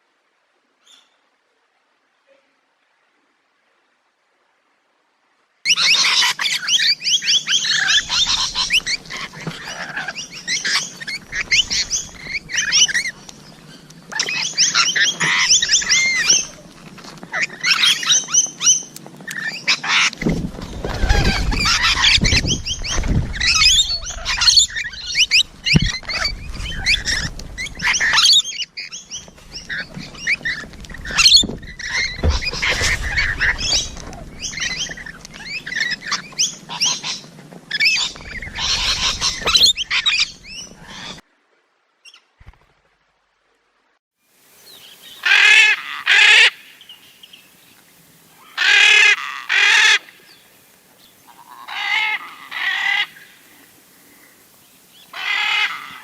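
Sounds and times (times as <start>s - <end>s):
flock of parrots chattering: 5.7s - 13.1s, 19.8s - 28.4s, 29.2s - 37.2s, 37.8s - 41.2s, 51.3s - 53.4s.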